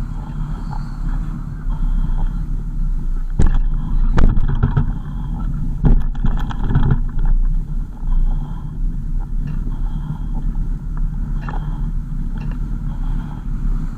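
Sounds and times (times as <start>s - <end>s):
car engine and road noise: 0.0s - 13.9s
sharp knocks and rattles: 3.1s - 8.2s, 9.2s - 13.2s.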